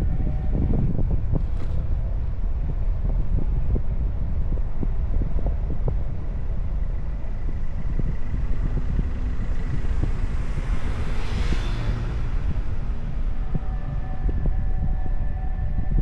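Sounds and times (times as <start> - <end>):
wind buffeting microphone: 0.0 - 16.0
whoosh: 8.8 - 14.4.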